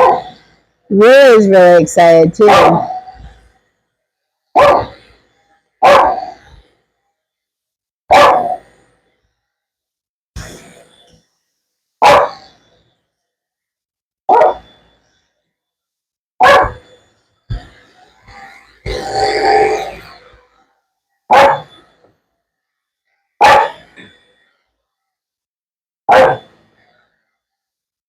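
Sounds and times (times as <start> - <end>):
dog barking: 0.0 - 0.4, 2.4 - 3.0, 4.6 - 5.0, 5.8 - 6.4, 8.1 - 8.6, 12.0 - 12.4, 14.3 - 14.6, 16.4 - 16.8, 21.3 - 21.7, 23.4 - 23.8, 26.1 - 26.5.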